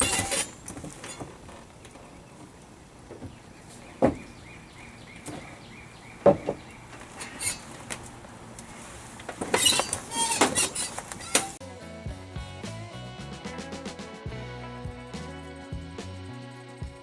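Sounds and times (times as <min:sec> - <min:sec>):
tools clinking and rattling: 0:00.0 - 0:11.6
sharp knocks: 0:03.0 - 0:04.5, 0:05.2 - 0:08.0.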